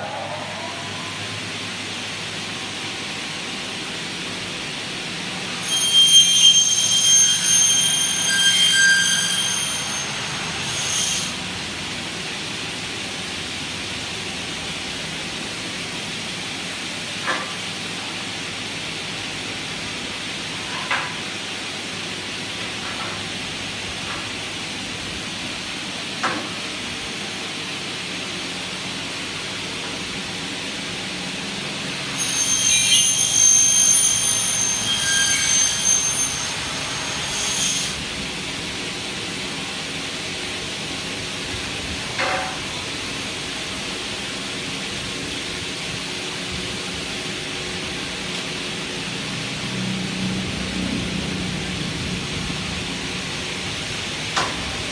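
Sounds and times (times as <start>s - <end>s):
high-pitched ringing whine of blades: 5.3s - 13.4s, 30.8s - 39.6s
cutting saw running: 5.4s - 13.2s, 31.6s - 38.6s.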